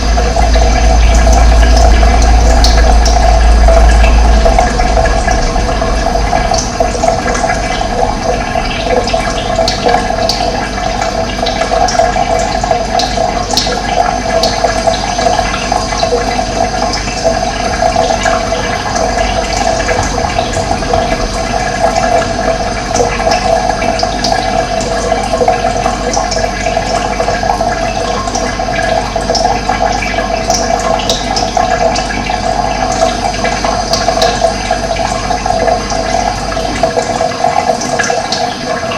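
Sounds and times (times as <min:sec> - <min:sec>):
running water flowing: 0:00.0 - 0:38.9.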